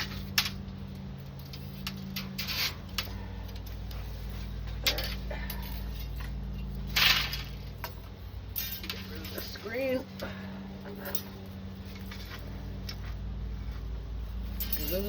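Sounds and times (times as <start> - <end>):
metal scraping on frame: 0.0 - 10.0
steady low hum: 0.0 - 15.0.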